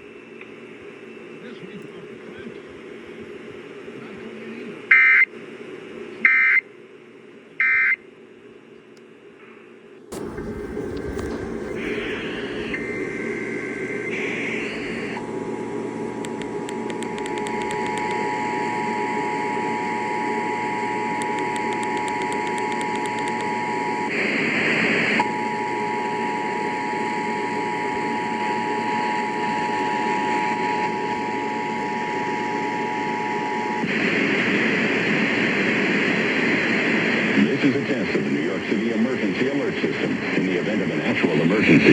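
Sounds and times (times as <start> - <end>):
radio static hiss: 10.1 - 15.4, 19.7 - 41.9
steady dual tone: 10.1 - 35.4.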